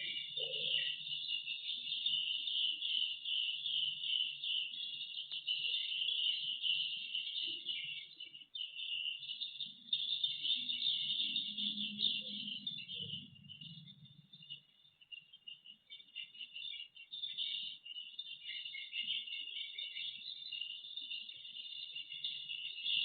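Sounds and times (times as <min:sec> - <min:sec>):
swiftlets twittering: 0:00.0 - 0:14.6.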